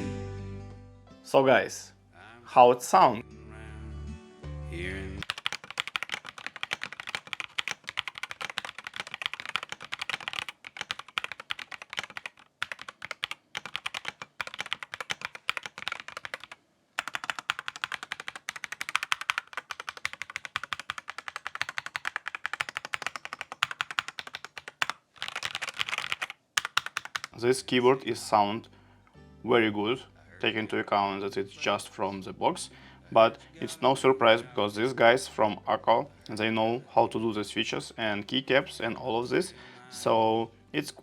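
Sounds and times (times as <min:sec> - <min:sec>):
fast typing on mechanical keyboard: 0:05.2 - 0:27.4.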